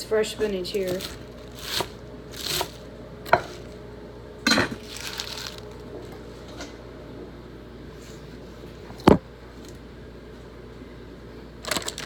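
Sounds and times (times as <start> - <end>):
scraping and rustling: 4.8 - 6.8.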